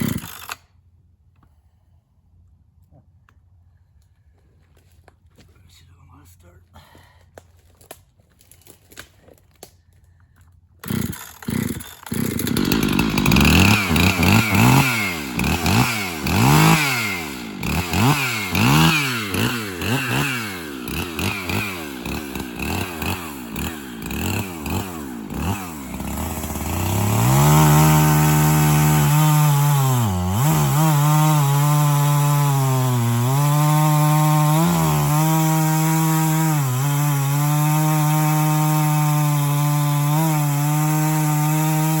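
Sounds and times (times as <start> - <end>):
chainsaw revving: 0.0 - 0.6, 10.8 - 42.0.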